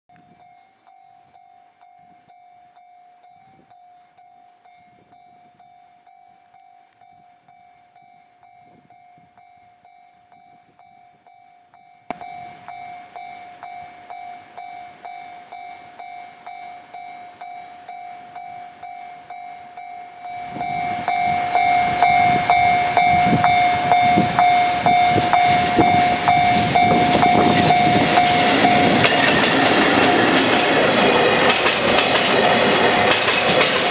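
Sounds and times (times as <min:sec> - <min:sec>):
level-crossing alarm ringing: 0:00.2 - 0:33.9
approaching freight train rumble: 0:12.2 - 0:33.9.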